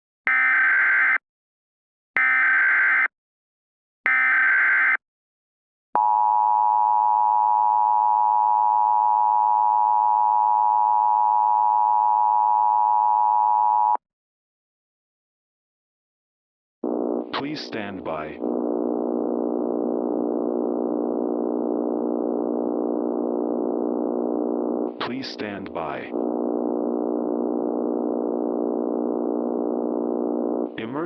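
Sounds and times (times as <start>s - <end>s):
steady attention tone: 16.8s - 31.0s.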